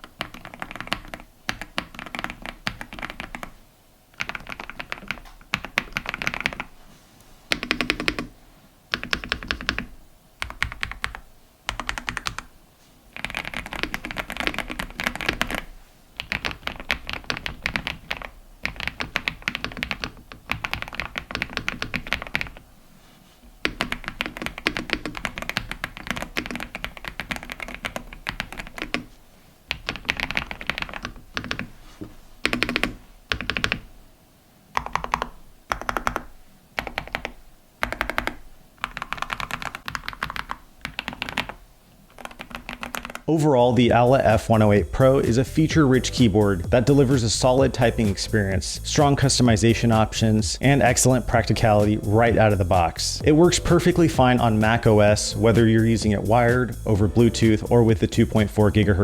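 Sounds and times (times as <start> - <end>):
typing on mechanical keyboard: 0.0 - 3.5, 4.2 - 6.7, 7.5 - 8.3, 8.9 - 12.5, 13.2 - 22.6, 23.6 - 29.1, 29.7 - 31.7, 32.4 - 33.8, 34.8 - 43.3.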